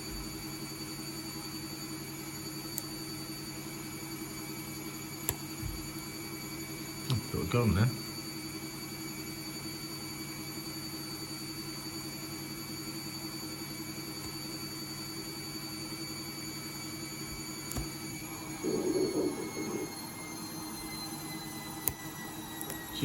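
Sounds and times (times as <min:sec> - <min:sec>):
washing machine running: 0:16.2 - 0:23.0.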